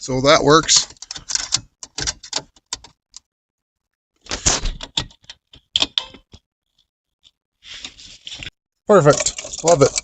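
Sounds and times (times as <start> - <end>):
switch panel clicks and knocks: 4.8 - 6.4.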